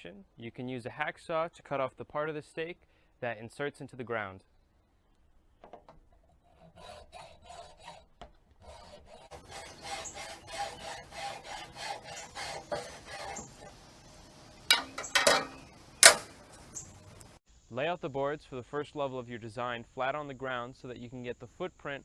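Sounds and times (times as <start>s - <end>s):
hacksaw cutting: 6.5s - 17.3s
sharp knocks: 14.6s - 16.9s.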